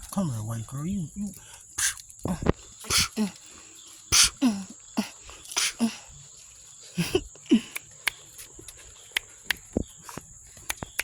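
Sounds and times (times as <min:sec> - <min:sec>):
sharp clicks: 0:10.6 - 0:11.0.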